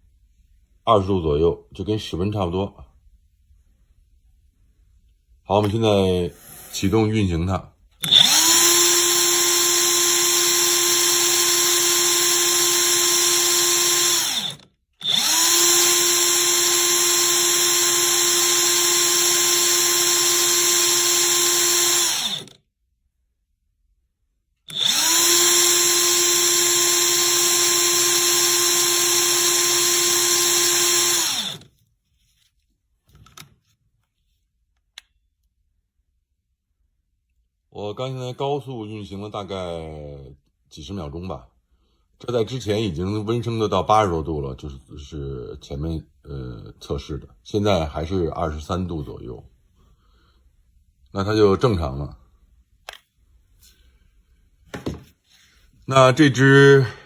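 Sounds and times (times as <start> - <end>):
impact wrench whining: 8.0 - 22.6, 24.7 - 31.7.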